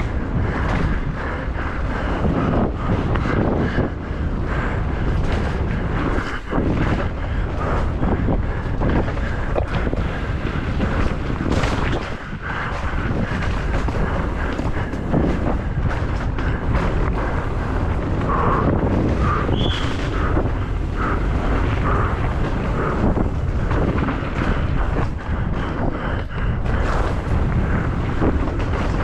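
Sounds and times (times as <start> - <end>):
bike knocking and rattling: 0.0 - 29.0
wind buffeting microphone: 0.0 - 29.0.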